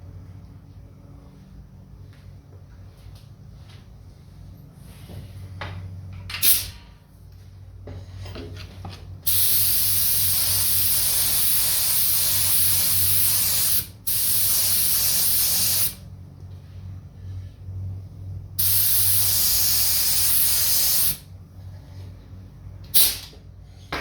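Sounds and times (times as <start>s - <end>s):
paint spray hiss: 9.2s - 16.0s, 18.6s - 21.2s, 22.9s - 23.3s.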